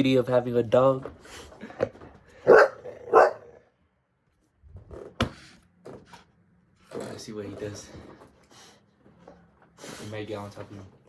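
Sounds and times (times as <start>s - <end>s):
dog barking: 2.4s - 3.6s.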